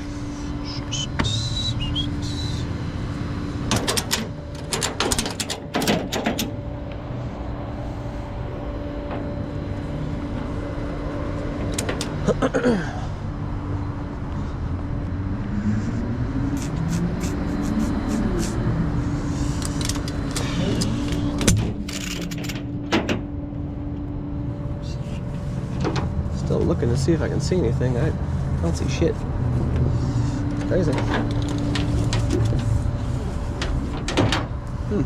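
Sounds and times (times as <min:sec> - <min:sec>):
vehicle engine idling: 0:00.0 - 0:35.0
sharp metallic clicks: 0:03.7 - 0:06.6.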